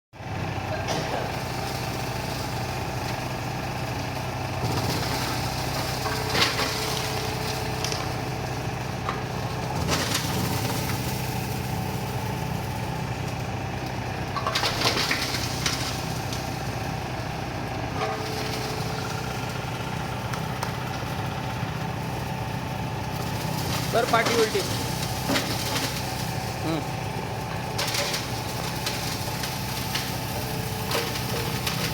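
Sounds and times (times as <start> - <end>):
mill machine hum: 0.2 - 31.9
loud machine rattles: 0.9 - 31.9.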